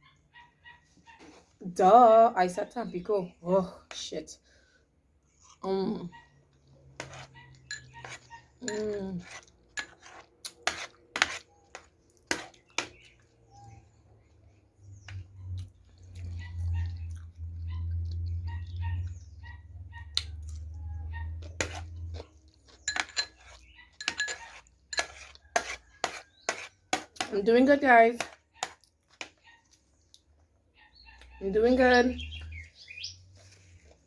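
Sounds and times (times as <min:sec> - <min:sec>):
fork scraping against a plate: 0:06.6 - 0:13.8, 0:20.2 - 0:27.6
low steady rumble: 0:15.3 - 0:22.6.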